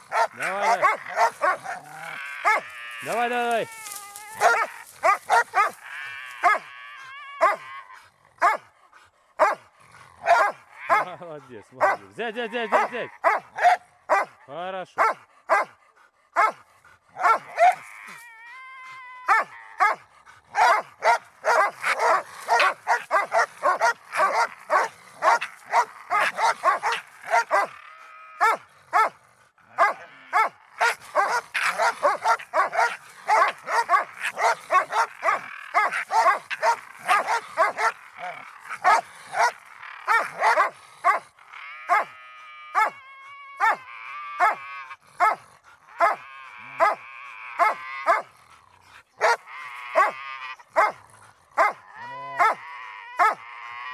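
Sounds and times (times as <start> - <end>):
dog barking rapidly: 0.0 - 3.6, 4.4 - 6.6, 7.4 - 7.6, 8.4 - 8.6, 9.4 - 9.6, 10.2 - 11.2, 11.8 - 14.4, 15.0 - 15.8, 16.4 - 16.6, 17.2 - 17.8, 19.3 - 27.8, 28.4 - 41.3, 41.9 - 42.1, 42.8 - 43.0, 43.6 - 43.8, 45.2 - 47.0, 47.6 - 48.3, 49.2 - 50.2, 50.8 - 51.0, 51.6 - 51.8
dog whining: 0.0 - 8.1, 17.2 - 29.1, 29.8 - 41.2.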